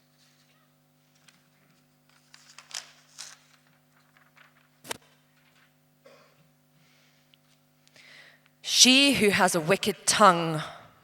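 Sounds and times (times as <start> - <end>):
low steady hum: 3.5 - 11.0.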